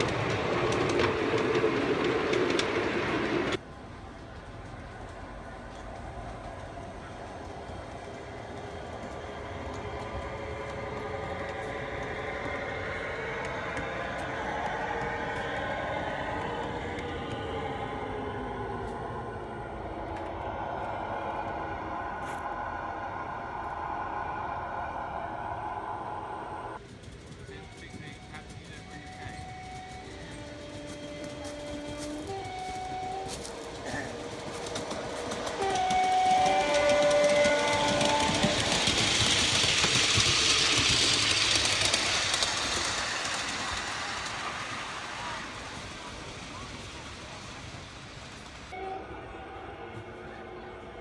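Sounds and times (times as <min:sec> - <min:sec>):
miniature train running on track: 0:00.0 - 0:24.2, 0:26.7 - 0:51.0
wheels scraping on rail: 0:00.0 - 0:51.0
hum: 0:09.4 - 0:26.8.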